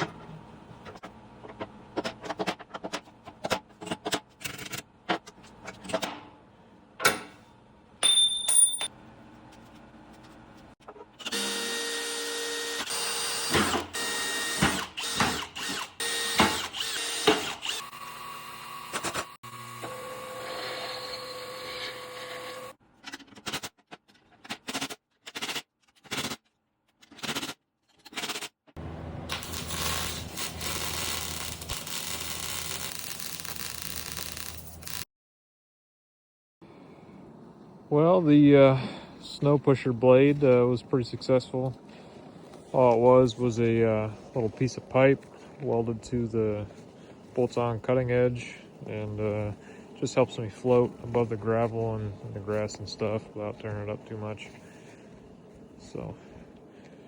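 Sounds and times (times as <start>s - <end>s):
power tools and machinery running: 11.2s - 22.8s, 28.8s - 35.0s.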